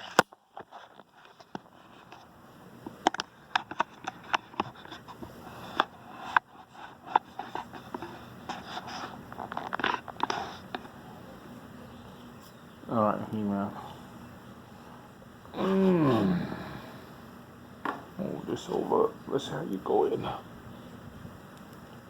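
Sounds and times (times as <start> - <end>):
plastic rubbing and rustling: 2.9 - 11.0.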